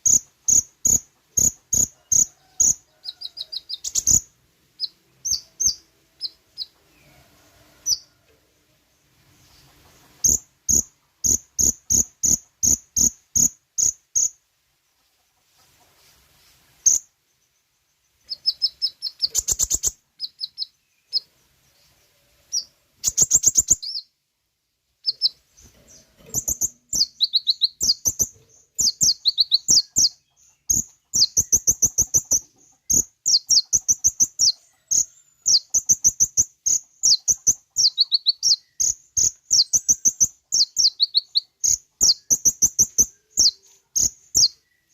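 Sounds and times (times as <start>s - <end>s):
sunbird singing high chirps: 0.0s - 7.2s, 10.2s - 14.4s, 16.9s - 24.2s, 25.0s - 44.9s.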